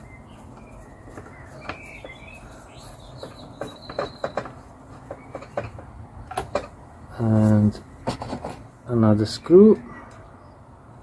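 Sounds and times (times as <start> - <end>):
faint bird chirps: 0.0 - 4.5.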